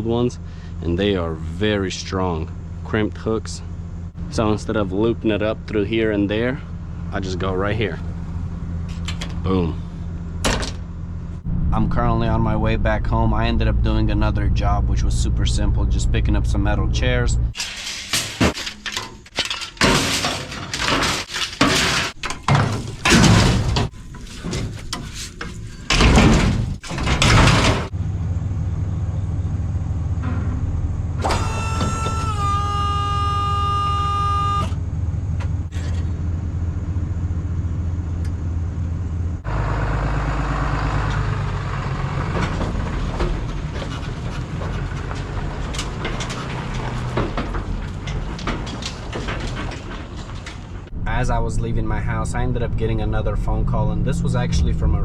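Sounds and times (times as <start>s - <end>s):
vehicle engine running: 0.0s - 17.6s, 27.2s - 31.4s, 33.8s - 55.0s
loud irregular knocks and bangs: 17.6s - 28.0s, 42.0s - 51.0s
vehicle horn: 31.2s - 34.9s.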